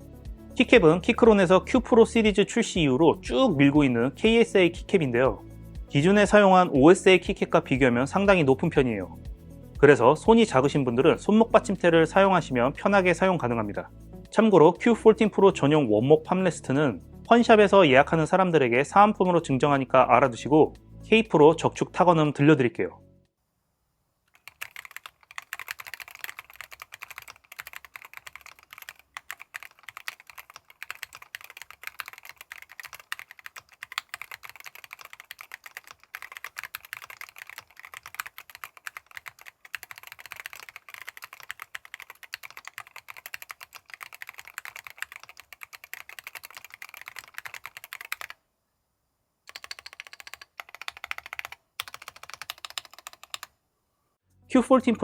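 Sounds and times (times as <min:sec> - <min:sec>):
mechanical keyboard typing: 0:24.3 - 0:48.4, 0:49.5 - 0:53.5.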